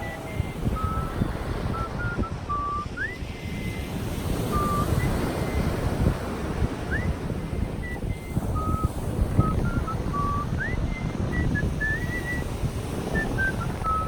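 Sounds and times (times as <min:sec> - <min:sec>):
person whistling a tune: 0:00.0 - 0:05.7, 0:06.9 - 0:14.0
surf washing: 0:00.0 - 0:14.0
wind buffeting microphone: 0:00.0 - 0:14.0.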